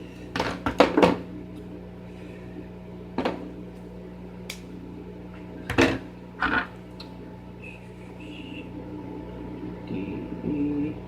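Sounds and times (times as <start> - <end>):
low electrical hum: 0.0 - 11.0.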